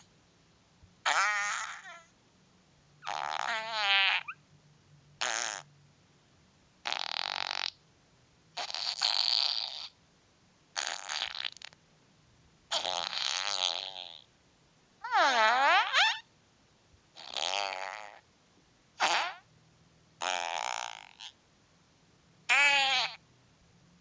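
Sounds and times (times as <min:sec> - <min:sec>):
farting sounds: 0:01.1 - 0:02.0, 0:03.0 - 0:04.4, 0:05.2 - 0:05.7, 0:06.8 - 0:07.8, 0:08.6 - 0:10.0, 0:10.8 - 0:11.8, 0:12.7 - 0:14.3, 0:15.0 - 0:16.2, 0:17.2 - 0:18.2, 0:19.0 - 0:19.4, 0:20.2 - 0:21.4, 0:22.5 - 0:23.2.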